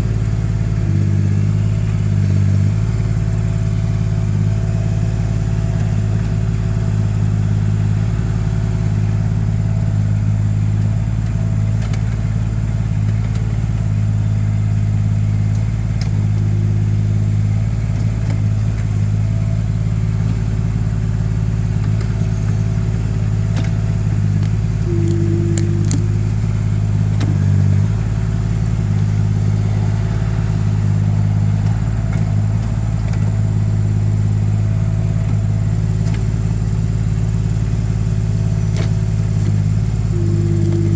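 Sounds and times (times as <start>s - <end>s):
excavator engine running: 0.0s - 40.9s
sharp clicks: 24.4s - 26.3s
high whine: 24.4s - 27.9s, 40.0s - 40.9s.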